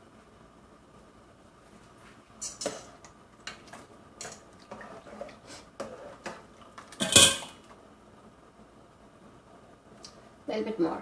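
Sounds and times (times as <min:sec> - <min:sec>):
metal utensil scraping a pot: 0:04.2 - 0:06.4.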